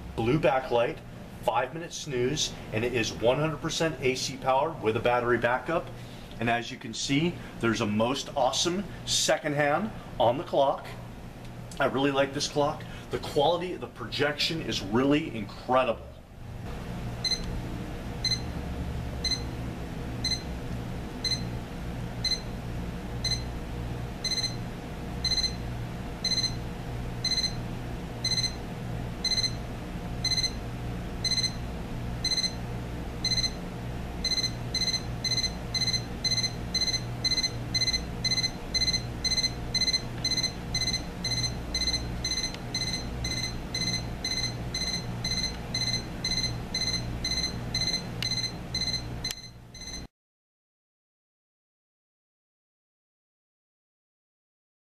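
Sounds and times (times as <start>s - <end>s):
low steady hum: 0.0s - 50.1s
alarm clock beeping: 17.2s - 17.4s, 18.2s - 18.5s, 19.2s - 19.5s, 20.2s - 20.5s, 21.2s - 21.5s, 22.2s - 22.4s, 23.2s - 23.5s, 24.2s - 24.6s, 25.2s - 25.6s, 26.2s - 26.6s, 27.2s - 27.6s, 28.2s - 28.6s, 29.2s - 29.6s, 30.2s - 30.6s, 31.2s - 31.6s, 32.2s - 32.6s, 33.2s - 33.6s, 34.2s - 50.1s.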